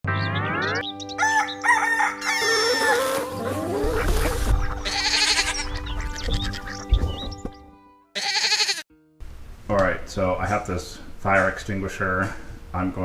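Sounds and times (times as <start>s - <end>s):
rooster crowing: 1.1s - 3.4s
chickens clucking: 1.2s - 7.6s.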